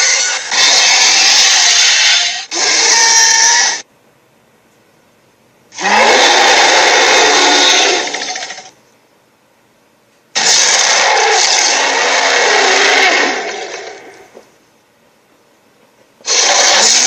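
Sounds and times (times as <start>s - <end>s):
harsh noisy sound effect: 0.0s - 3.8s, 10.4s - 14.2s, 16.3s - 17.0s.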